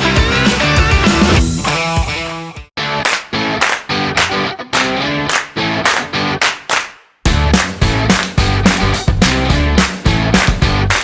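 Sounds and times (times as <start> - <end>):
electric guitar: 0.0 - 6.4
drum beat: 7.3 - 11.0.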